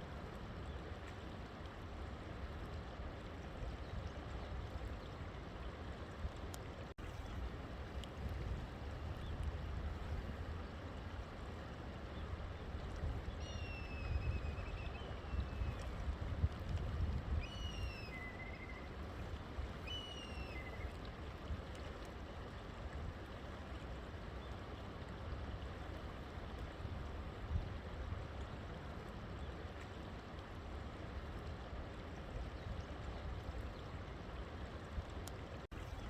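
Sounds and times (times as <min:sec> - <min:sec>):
river flowing: 0:09.7 - 0:32.2
bird whistled calls: 0:13.4 - 0:15.8, 0:17.4 - 0:18.9, 0:19.8 - 0:20.8.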